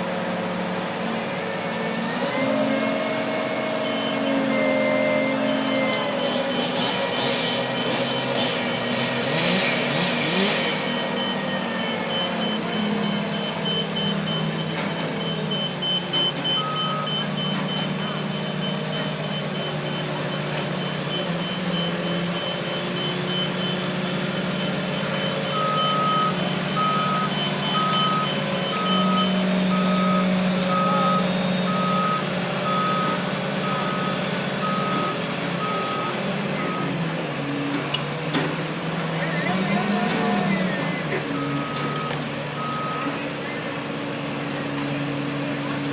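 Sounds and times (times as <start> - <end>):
heavy diesel machinery running: 0.0 - 45.9
backup alarm beeping: 10.9 - 37.0.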